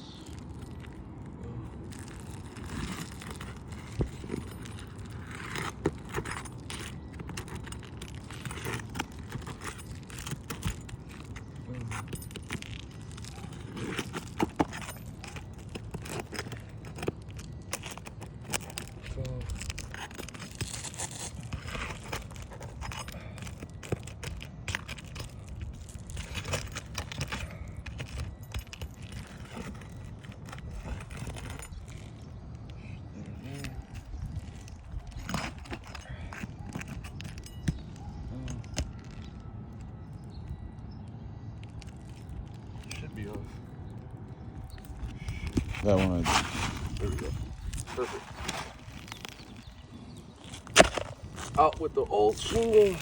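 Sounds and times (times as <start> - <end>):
metal pry tool scraping shingles: 1.8 - 32.3, 44.7 - 53.0.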